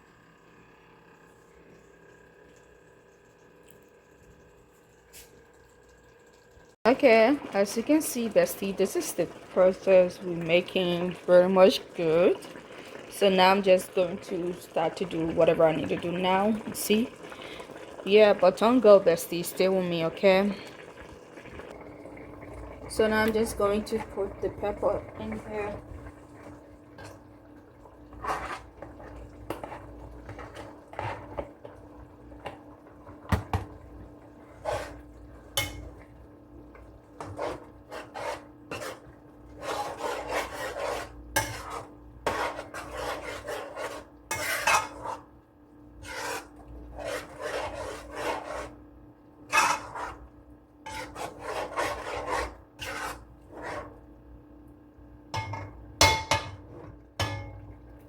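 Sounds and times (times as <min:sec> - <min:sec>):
utensil scraping cookware: 0:28.1 - 0:31.4, 0:34.5 - 0:35.0, 0:37.2 - 0:45.3, 0:46.0 - 0:48.8, 0:49.5 - 0:50.3, 0:50.9 - 0:54.0.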